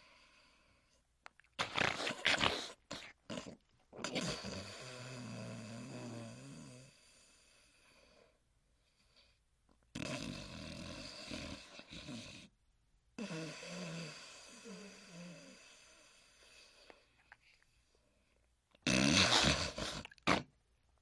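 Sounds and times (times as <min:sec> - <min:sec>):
cartoon character snoring: 0:01.8 - 0:07.1, 0:09.9 - 0:12.5, 0:13.2 - 0:16.1, 0:18.8 - 0:20.5.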